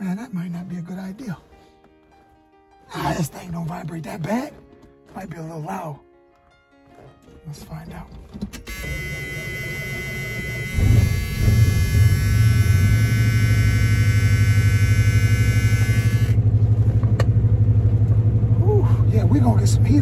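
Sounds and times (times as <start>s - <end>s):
engine cranking and running: 8.2s - 20.0s
high whine: 8.7s - 18.8s.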